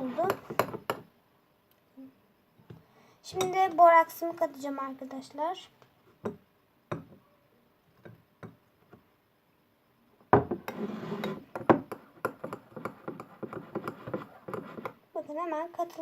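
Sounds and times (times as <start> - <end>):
spoon stirring wet slime: 0.0 - 1.0, 10.6 - 15.0.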